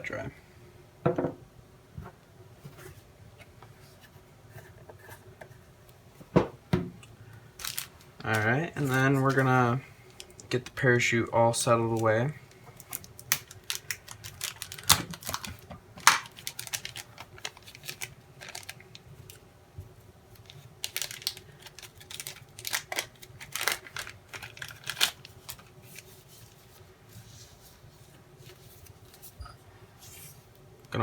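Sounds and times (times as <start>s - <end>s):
plastic parachute crinkling: 7.6s - 10.8s, 12.8s - 19.4s, 20.4s - 26.1s.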